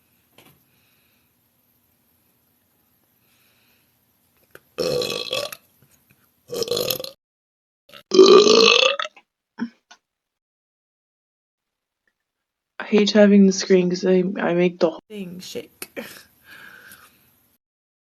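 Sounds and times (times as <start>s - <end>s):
woman belching: 4.8s - 5.6s, 6.5s - 7.2s, 7.9s - 9.7s.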